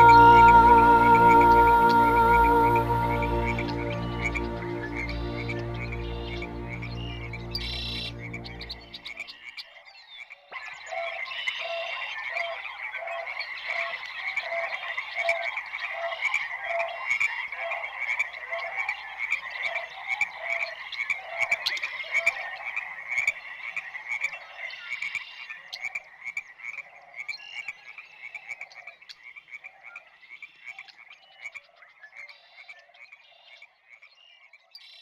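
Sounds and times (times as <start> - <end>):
music: 0.0 - 9.2
frogs chorus calling: 0.0 - 34.7.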